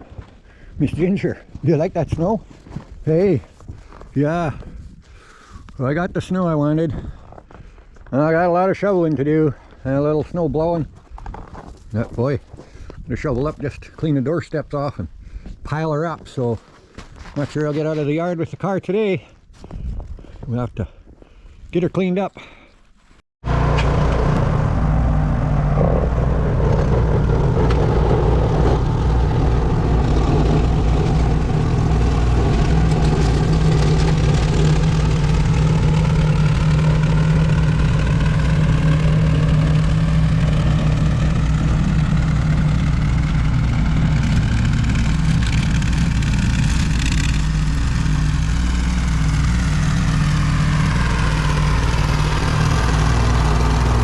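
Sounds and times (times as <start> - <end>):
engine running steadily: 23.4 - 54.0
whooshing tone: 23.5 - 54.0.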